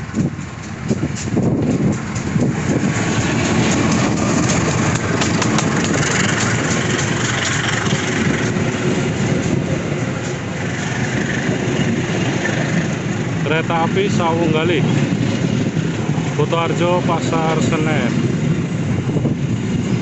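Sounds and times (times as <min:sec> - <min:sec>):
train wheels rumbling on rails: 0:00.0 - 0:20.0
clicks over rail joints: 0:00.1 - 0:12.9.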